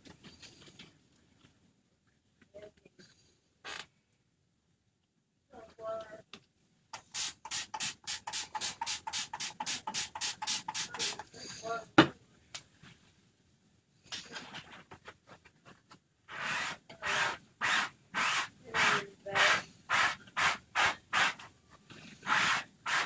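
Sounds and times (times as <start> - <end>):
fast rhythmic scrubbing: 7.0 - 11.4
heavy rubbing strokes: 7.0 - 11.7, 16.3 - 21.5, 22.2 - 23.0.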